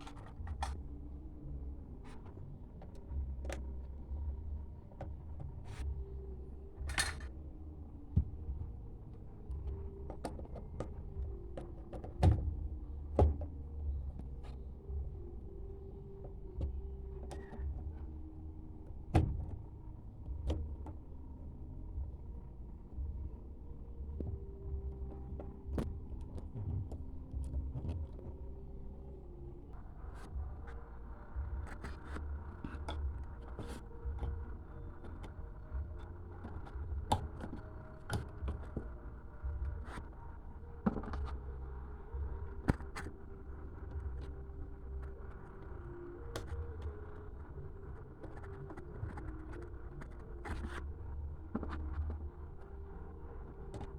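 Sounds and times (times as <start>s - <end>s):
parts clicking and knocking: 0.0s - 0.9s, 6.8s - 7.4s
low steady hum: 0.0s - 53.9s
tools knocking and clicking: 6.9s - 7.3s.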